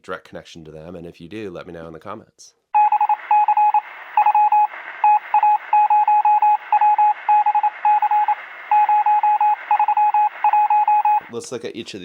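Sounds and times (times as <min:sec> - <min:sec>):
rapid short electronic beeps: 0:02.8 - 0:11.3.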